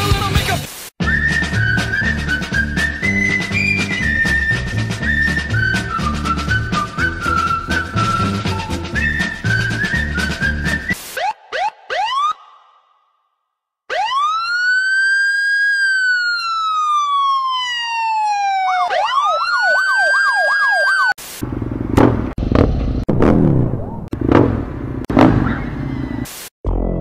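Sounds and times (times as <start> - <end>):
siren wailing and yelping: 10.9 - 13.0, 13.9 - 21.2, 25.4 - 26.3
noisy irregular thumps: 21.9 - 23.5, 24.1 - 25.5.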